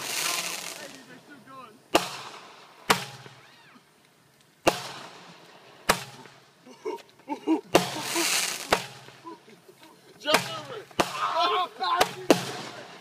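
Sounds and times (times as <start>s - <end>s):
firecracker bangs: 1.9s - 3.5s, 4.6s - 6.4s, 7.7s - 9.2s, 10.2s - 13.0s.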